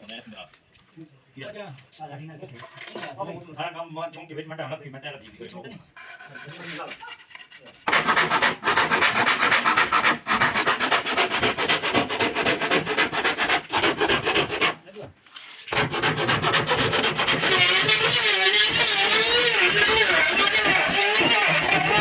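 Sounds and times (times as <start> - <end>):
rubbing strokes on wood: 7.8 - 14.9, 15.7 - 22.0.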